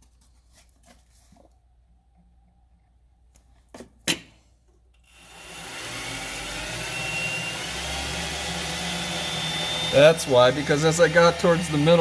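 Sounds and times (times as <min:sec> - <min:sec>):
metal lathe motor running: 0:05.1 - 0:12.0.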